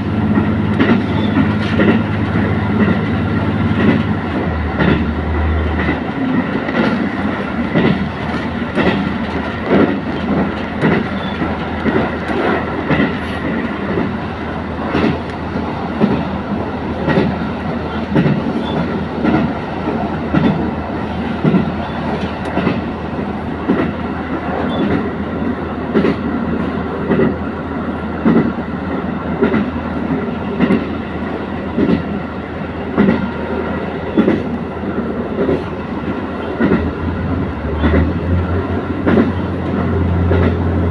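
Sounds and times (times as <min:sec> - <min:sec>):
train wheels clacking over rail joints: 0:00.0 - 0:23.0, 0:23.6 - 0:25.1, 0:25.9 - 0:27.5, 0:28.2 - 0:31.1, 0:31.7 - 0:32.2, 0:32.9 - 0:40.9
train running rumble and hum: 0:00.0 - 0:40.9.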